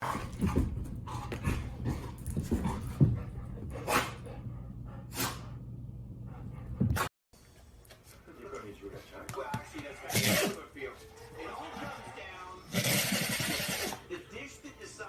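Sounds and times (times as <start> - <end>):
dog sneezing: 5.1 - 5.5, 12.7 - 14.0.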